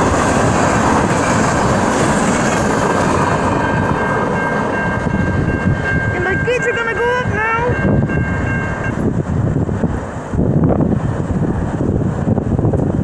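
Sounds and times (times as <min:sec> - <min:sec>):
train wheels rumbling on rails: 0:00.0 - 0:13.0
thin high-pitched tone: 0:03.6 - 0:09.0.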